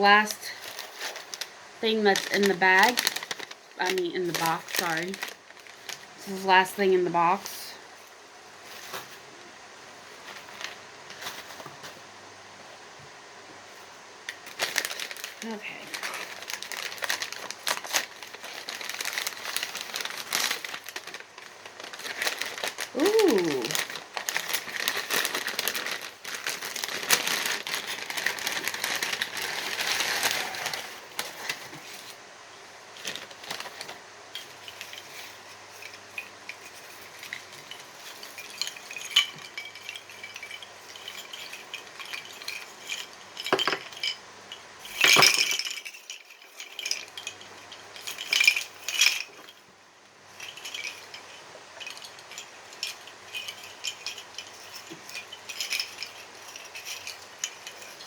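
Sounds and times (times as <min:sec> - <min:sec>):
paper crinkling: 0:00.5 - 0:06.1, 0:14.4 - 0:32.2, 0:33.0 - 0:34.0.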